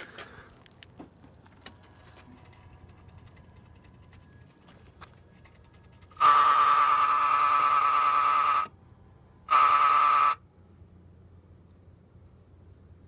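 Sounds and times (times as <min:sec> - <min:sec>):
loud high buzzing tone: 0:06.1 - 0:10.7.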